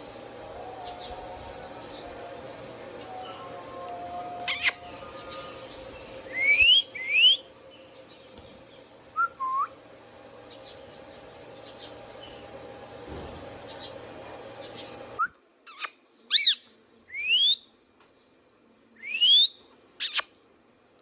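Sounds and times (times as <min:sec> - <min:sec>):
faint steady hum: 0:00.0 - 0:21.0
parakeet squawking and whistling: 0:04.4 - 0:05.5, 0:15.7 - 0:16.6, 0:20.0 - 0:20.3.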